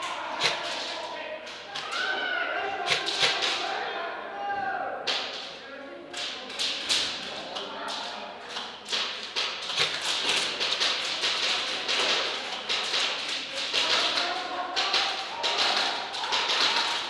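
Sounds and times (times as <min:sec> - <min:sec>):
pellets striking hard surfaces: 0:00.0 - 0:01.0, 0:08.6 - 0:17.0
airsoft guns firing: 0:00.4 - 0:01.0, 0:02.9 - 0:03.6, 0:08.8 - 0:17.0.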